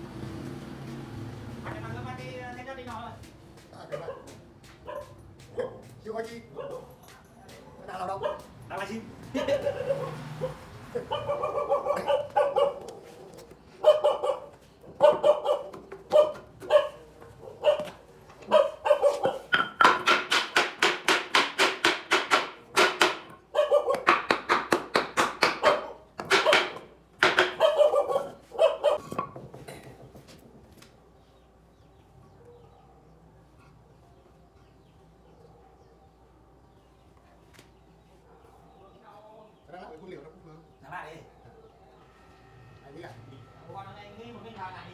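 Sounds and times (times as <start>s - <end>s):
dog barking: 3.8s - 7.1s, 7.8s - 8.6s, 9.3s - 19.6s, 23.5s - 24.3s, 25.5s - 29.2s, 32.2s - 33.7s, 35.2s - 36.9s, 38.2s - 39.0s, 41.3s - 42.1s.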